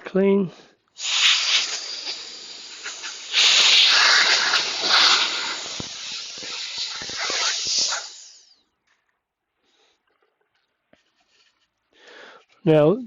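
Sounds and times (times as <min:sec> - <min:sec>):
compressed air hissing: 0:00.8 - 0:08.7.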